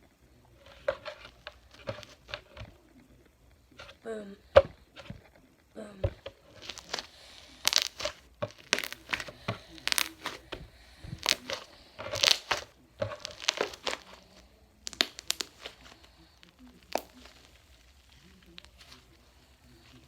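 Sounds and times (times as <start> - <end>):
slime squeezed by hand: 6.6 - 19.0
air bubbles popping in slime: 7.6 - 9.2, 14.8 - 15.8.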